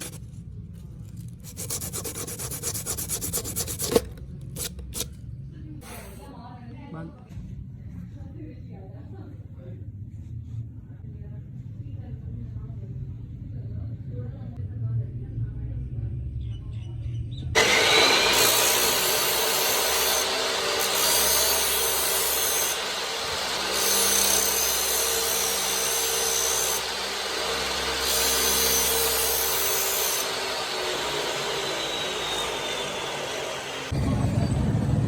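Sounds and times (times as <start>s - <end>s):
abrasive tool rasping: 0.0s - 0.2s, 1.4s - 5.1s, 5.8s - 6.3s, 17.6s - 33.9s.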